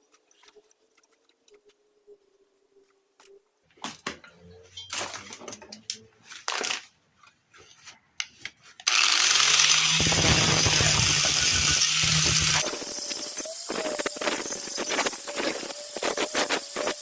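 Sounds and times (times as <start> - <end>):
power tool running: 8.8 - 17.0.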